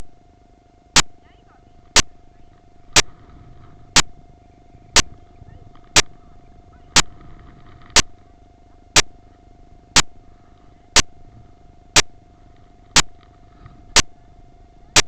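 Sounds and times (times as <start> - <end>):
faint steady tone: 0.0 - 15.0
sharp clock-like ticks: 1.0 - 1.2, 2.0 - 2.2, 9.0 - 9.2, 10.0 - 10.2, 12.0 - 12.2.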